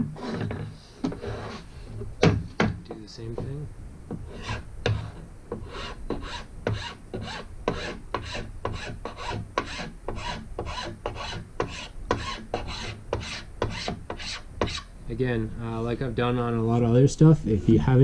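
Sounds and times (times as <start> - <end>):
file rasping along wood: 4.2 - 14.9.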